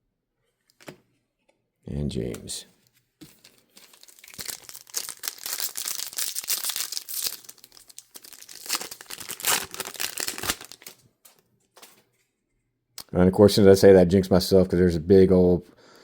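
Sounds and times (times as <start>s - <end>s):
foil wrapper crinkling and tearing: 3.4s - 11.0s.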